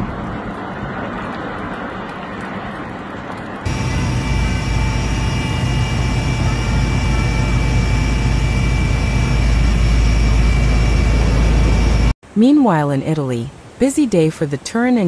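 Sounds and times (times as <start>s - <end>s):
heavy engine rumbling with whine: 3.6s - 12.2s.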